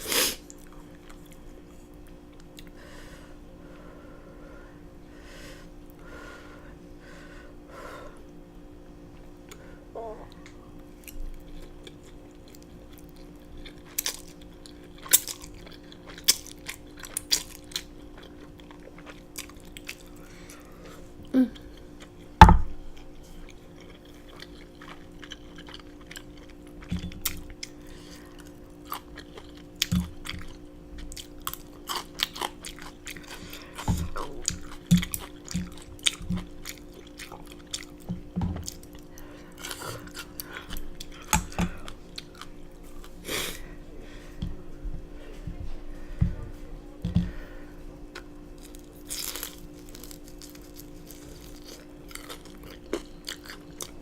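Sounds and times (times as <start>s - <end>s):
person chewing: 0.0s - 2.8s, 10.3s - 43.6s, 48.1s - 54.0s
low steady hum: 0.0s - 54.0s.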